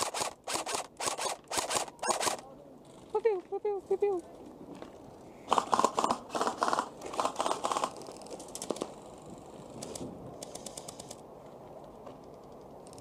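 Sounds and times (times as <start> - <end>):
airsoft rifle rapid fire: 0.0 - 2.4, 5.5 - 7.9.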